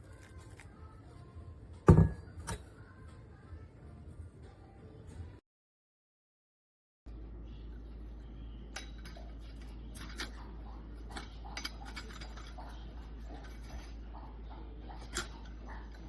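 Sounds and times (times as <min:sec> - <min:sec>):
kitchenware clinking: 0:01.8 - 0:02.9, 0:08.7 - 0:16.0
steady low hum: 0:07.1 - 0:16.0.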